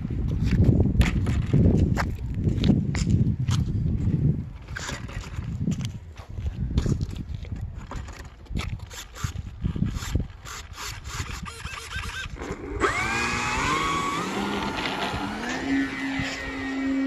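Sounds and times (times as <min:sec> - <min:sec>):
wind rumble: 0:00.0 - 0:11.6, 0:12.2 - 0:17.0
electric motor and propeller whine: 0:08.9 - 0:17.0.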